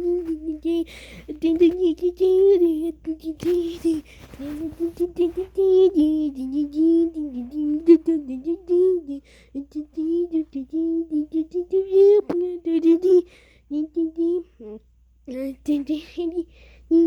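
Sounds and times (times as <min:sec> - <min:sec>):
child humming: 0:00.0 - 0:14.8.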